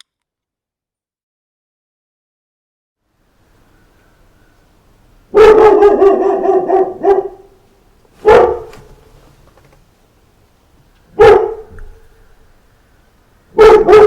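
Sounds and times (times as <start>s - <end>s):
dog barking: 5.3s - 7.6s, 8.2s - 9.0s, 11.1s - 12.0s, 13.5s - 14.0s.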